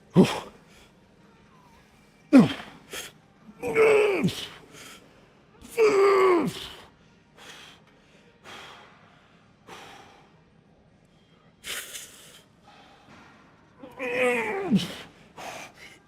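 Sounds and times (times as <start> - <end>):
man groaning: 2.4 - 2.7, 13.9 - 15.1
man breathing hard: 7.4 - 10.4.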